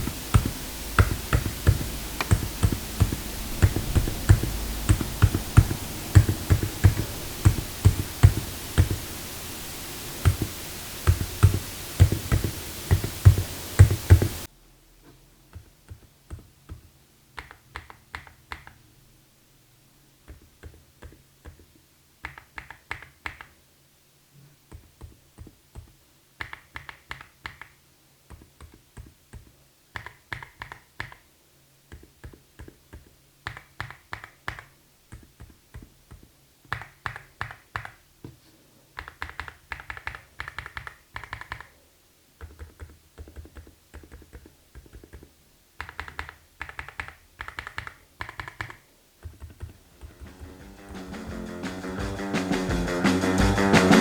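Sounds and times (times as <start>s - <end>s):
soft keyboard typing: 0.0s - 9.1s, 10.2s - 14.5s, 15.5s - 18.9s, 20.2s - 23.6s, 24.7s - 31.3s, 31.9s - 38.4s, 39.0s - 41.8s, 42.4s - 50.8s
music: 50.0s - 54.0s.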